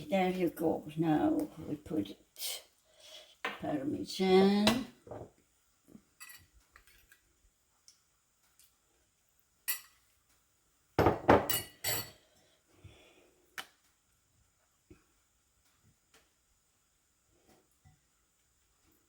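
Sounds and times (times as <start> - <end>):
utensils and dishes clinking: 11.2 - 12.2.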